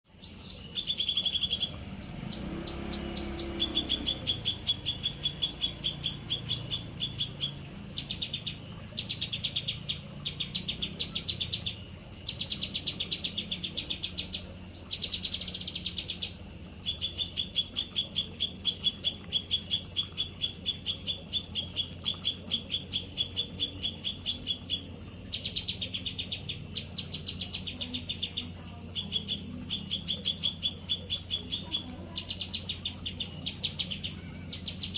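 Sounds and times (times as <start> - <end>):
songbird chirping rapidly: 0.0 - 34.9
harsh hissy bird call: 33.4 - 34.9.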